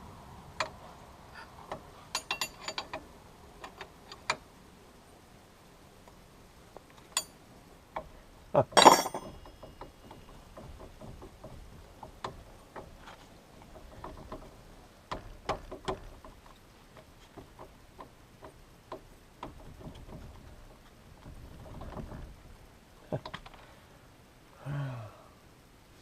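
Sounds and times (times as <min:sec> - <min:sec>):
metallic clinks of hand tools: 0:02.1 - 0:03.0, 0:08.8 - 0:09.8
sharp knocks: 0:08.7 - 0:13.0.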